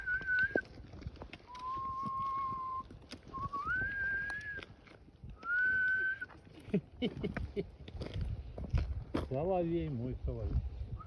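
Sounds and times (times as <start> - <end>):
person whistling long notes: 0.0 - 0.6, 1.5 - 4.7, 5.4 - 6.4.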